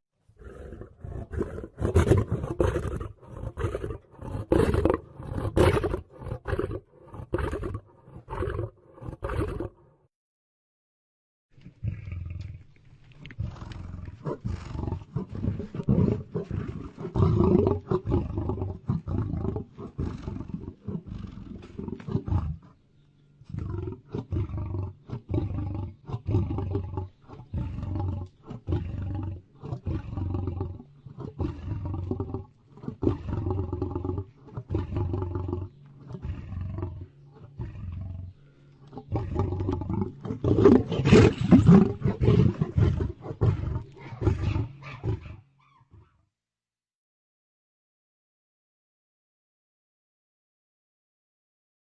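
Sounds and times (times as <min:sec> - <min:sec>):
lion roaring grunts: 0:00.4 - 0:09.8, 0:23.5 - 0:45.4.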